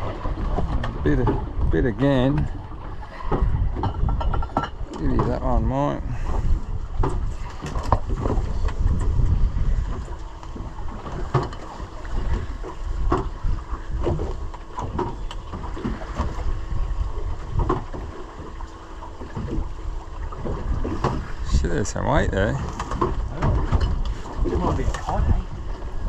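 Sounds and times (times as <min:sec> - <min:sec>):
heavy low rumble: 0:00.0 - 0:11.4
waves slapping boat hull: 0:00.0 - 0:26.0
wind buffeting microphone: 0:00.0 - 0:26.0.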